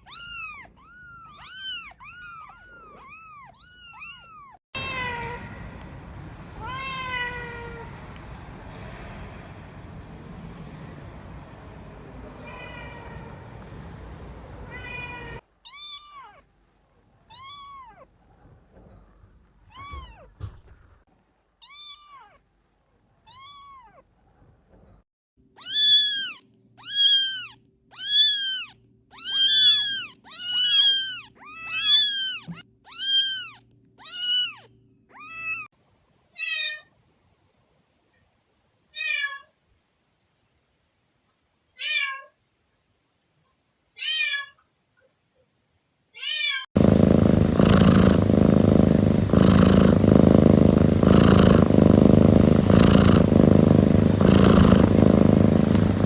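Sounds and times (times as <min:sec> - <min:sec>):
kittens meowing: 0:00.0 - 0:05.4, 0:14.7 - 0:16.4, 0:17.3 - 0:18.1, 0:19.7 - 0:20.3, 0:25.6 - 0:35.7.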